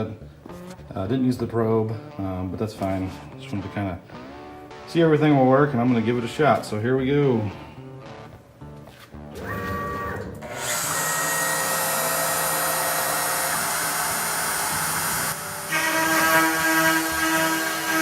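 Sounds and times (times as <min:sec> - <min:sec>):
router spindle whine: 0:09.4 - 0:18.0.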